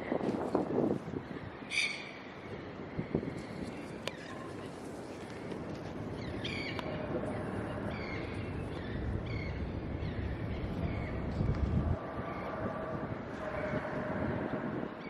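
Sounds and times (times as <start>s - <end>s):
steady background rush: 0.0s - 15.0s
bird harsh calls: 1.6s - 3.4s.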